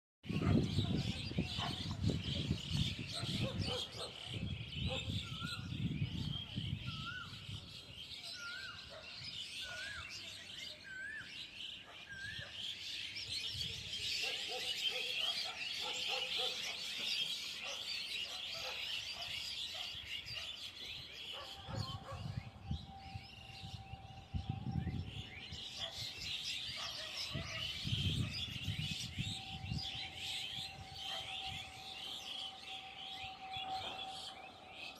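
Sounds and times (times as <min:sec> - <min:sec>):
small birds chirping: 0:00.2 - 0:34.9
bird whistling up and down: 0:04.8 - 0:07.6, 0:08.2 - 0:12.7, 0:13.5 - 0:34.9.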